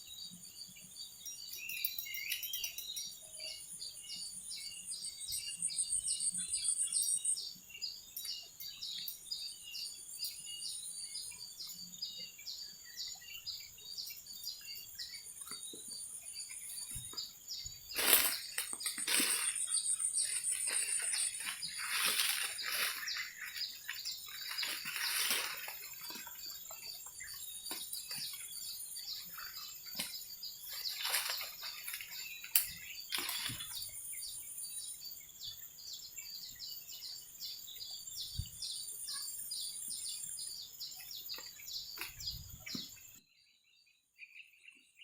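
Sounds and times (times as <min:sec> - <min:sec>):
bird chirping: 0:00.0 - 0:45.0.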